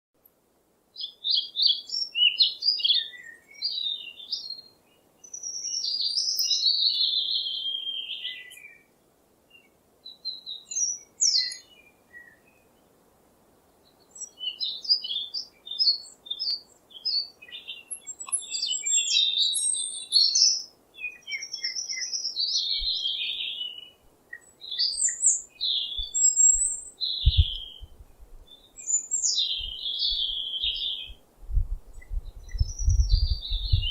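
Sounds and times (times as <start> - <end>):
songbirds chirping and trilling: 0.2 - 33.9.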